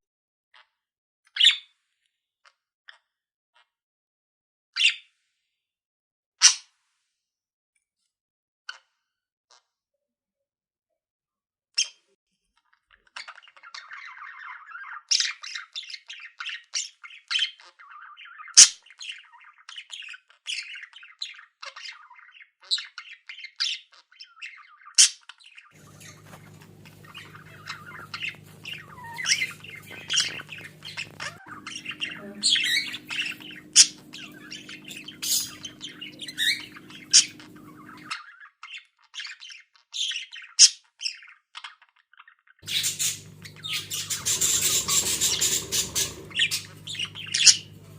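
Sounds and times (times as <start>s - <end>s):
budgerigars chirping and chattering: 13.2s - 47.9s
low steady hum: 25.8s - 38.1s, 42.6s - 47.9s.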